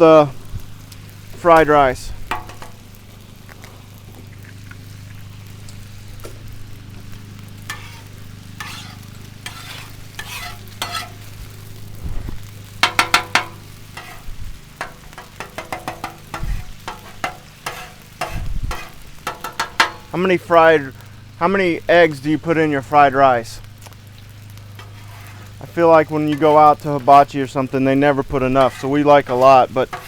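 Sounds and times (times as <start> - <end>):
food sizzling on a griddle: 0.0 - 30.0
steady low hum: 0.0 - 30.0
spatula scraping metal griddle: 7.6 - 11.5, 12.1 - 20.4, 24.5 - 30.0.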